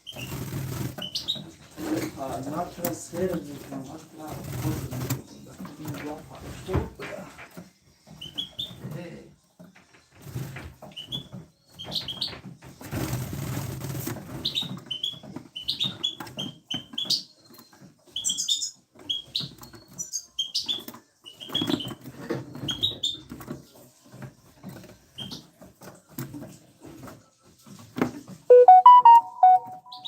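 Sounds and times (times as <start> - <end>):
rustling noise: 12.1 - 14.8
birds chirping: 28.5 - 30.0.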